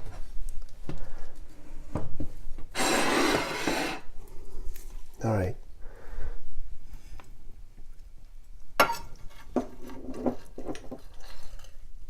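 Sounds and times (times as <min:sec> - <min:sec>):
object scraping across countertop: 0:02.7 - 0:04.2.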